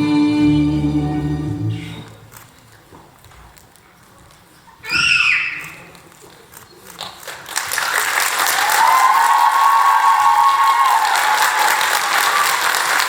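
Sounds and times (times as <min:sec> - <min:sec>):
audience applauding: 0:07.2 - 0:13.0.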